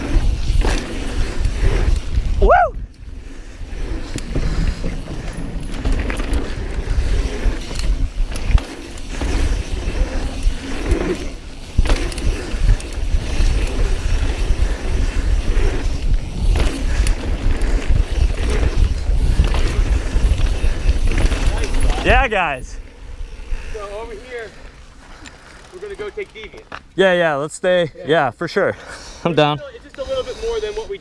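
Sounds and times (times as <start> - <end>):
wind noise on microphone: 0.0 - 22.6
bike tyres rumbling on dirt: 0.0 - 26.4
bike rattling over bumps: 0.0 - 27.3.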